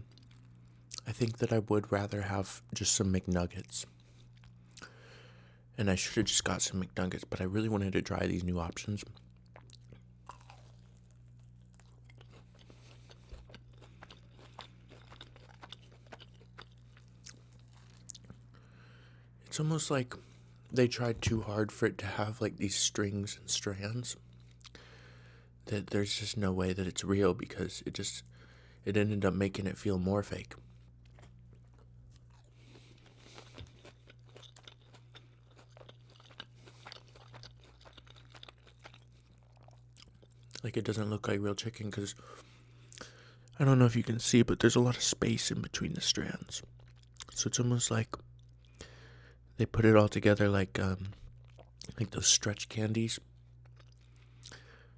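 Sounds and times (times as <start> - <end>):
chewing crunchy food: 0.0 - 1.6, 3.6 - 5.0, 8.0 - 18.6, 24.1 - 25.0, 30.3 - 40.8, 46.0 - 47.6, 48.2 - 49.2, 50.8 - 54.9
low electrical hum: 0.0 - 54.9.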